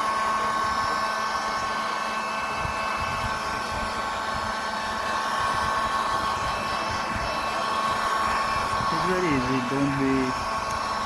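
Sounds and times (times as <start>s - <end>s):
hot air gun blowing: 7.8s - 10.8s.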